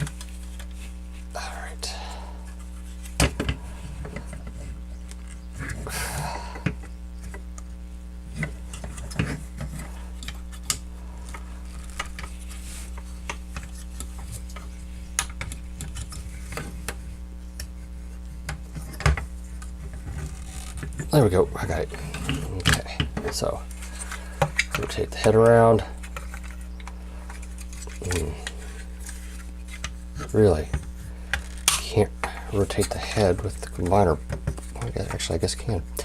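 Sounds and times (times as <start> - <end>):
low electrical hum: 0.0 - 36.0.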